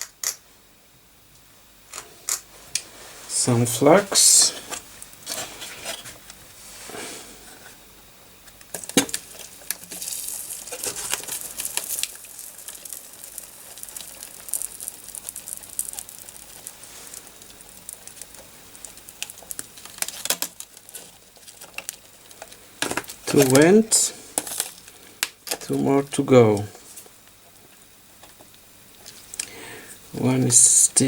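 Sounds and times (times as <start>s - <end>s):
sharp click: 0.0s - 0.4s
flux sizzling and crackling: 8.7s - 25.2s.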